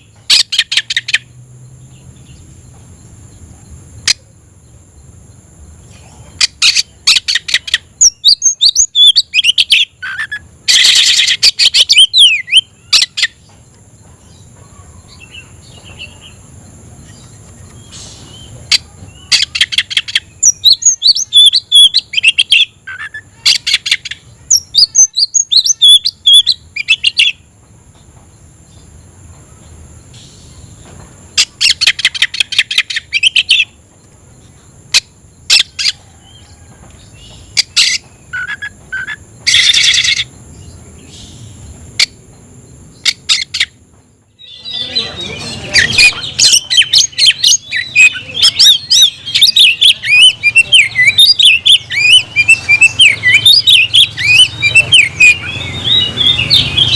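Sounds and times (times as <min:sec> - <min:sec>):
magpie-robin whistled song: 0:06.4 - 0:13.4, 0:17.0 - 0:27.4, 0:31.4 - 0:33.8, 0:37.1 - 0:42.2, 0:44.4 - 0:56.9.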